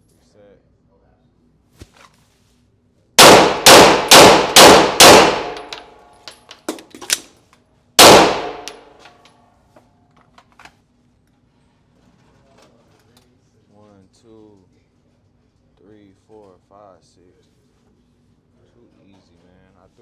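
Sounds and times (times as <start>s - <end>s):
pistol shots with echo: 3.2s - 5.9s, 8.0s - 8.9s.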